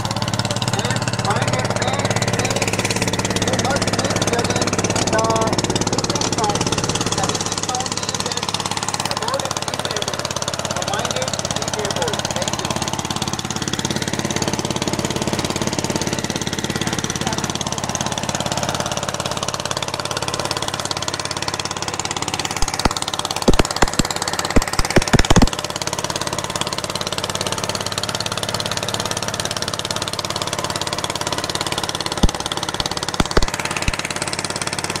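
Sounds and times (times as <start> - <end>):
motorboat engine running: 0.0 - 35.0
sharp knocks: 22.5 - 25.6, 32.1 - 34.0.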